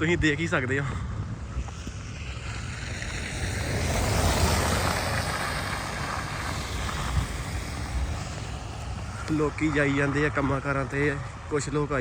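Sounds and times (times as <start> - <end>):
wind rumbling on microphone: 0.0 - 12.0
vehicle passing on snowy road: 1.4 - 12.0.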